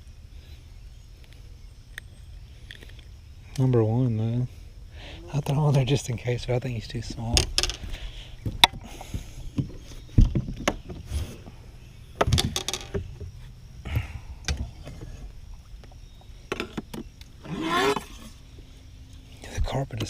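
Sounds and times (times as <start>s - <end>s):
faint low hum: 0.0s - 20.0s
knocks and thumps on boat: 8.4s - 11.2s.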